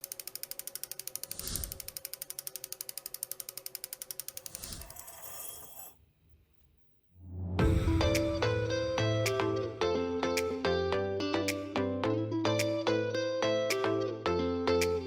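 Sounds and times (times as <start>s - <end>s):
rapid ratchet-like clicking: 0.0s - 4.8s
low thump: 7.3s - 9.0s.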